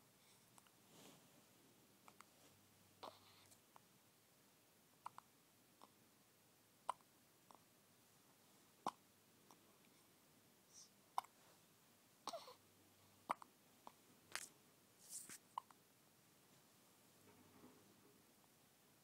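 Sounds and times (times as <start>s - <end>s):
baby hiccuping: 3.0s - 3.4s, 6.8s - 7.6s, 8.8s - 9.0s, 10.8s - 11.4s, 12.2s - 12.6s, 13.2s - 14.4s, 15.6s - 15.8s.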